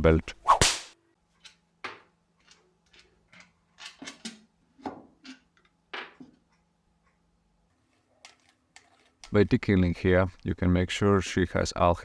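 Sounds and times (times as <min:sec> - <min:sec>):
metal parts clicking and knocking: 0:01.4 - 0:04.5.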